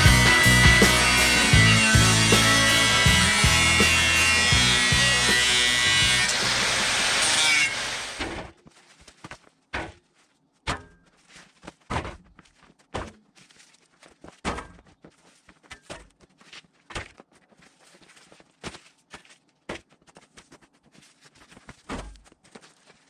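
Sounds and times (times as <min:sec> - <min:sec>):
background music: 0:00.0 - 0:08.1.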